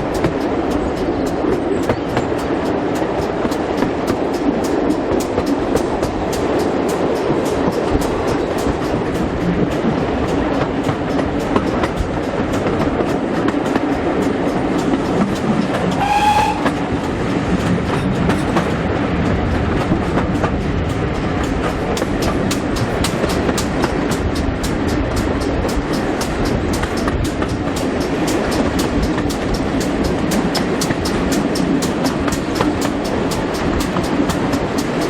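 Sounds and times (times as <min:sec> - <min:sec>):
sharp rhythmic beats: 0:00.0 - 0:18.8, 0:19.5 - 0:35.0
train wheels rumbling on track: 0:00.0 - 0:35.0
brief high tone: 0:16.0 - 0:16.7.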